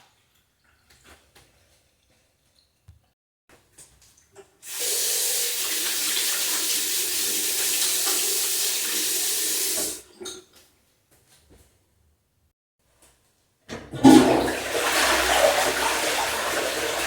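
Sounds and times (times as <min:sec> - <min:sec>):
water running from a tap: 0:04.6 - 0:10.1, 0:14.0 - 0:17.0.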